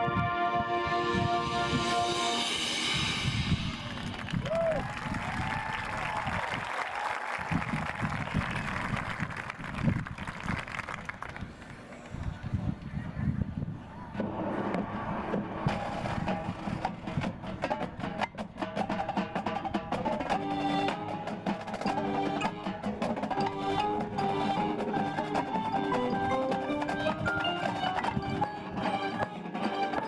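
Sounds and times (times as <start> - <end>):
marching band playing: 0.0 - 6.5, 14.3 - 30.0.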